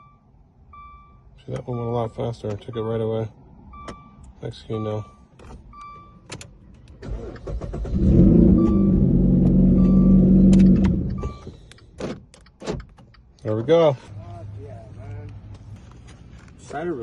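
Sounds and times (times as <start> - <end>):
short electronic beeps: 0.0 - 2.9, 8.4 - 11.6
car engine starting and running: 0.0 - 17.0.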